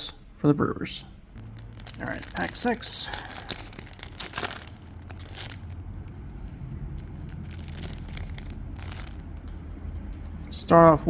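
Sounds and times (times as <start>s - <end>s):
low steady hum: 0.0s - 11.0s
foil wrapper ripping and crinkling: 1.4s - 6.1s, 7.0s - 9.5s.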